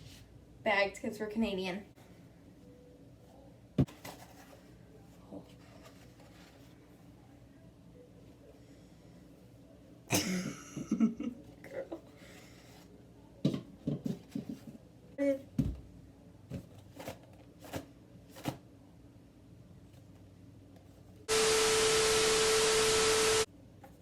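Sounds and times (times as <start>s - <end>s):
baking items knocking and clicking: 13.4s - 14.8s.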